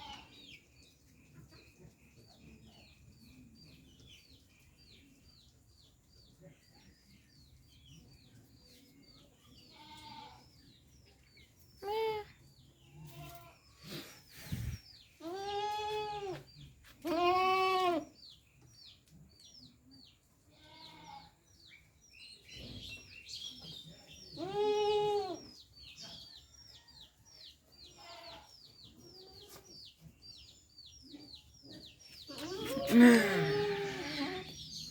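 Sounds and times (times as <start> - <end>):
goat bleating: 15.2 - 16.4, 17.0 - 18.1, 24.4 - 25.4, 32.3 - 34.6.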